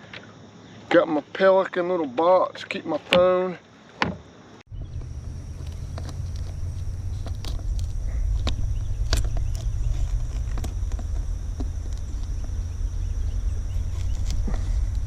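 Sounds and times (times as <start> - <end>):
gear knocking in aluminum canoe: 4.7 - 15.0
low rumble: 4.7 - 15.0
thin high tone: 4.8 - 15.0.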